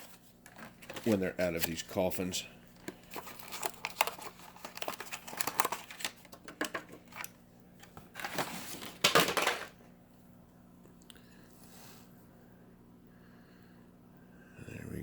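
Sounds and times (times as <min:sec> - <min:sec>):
plastic packaging crinkling: 0:02.8 - 0:09.7.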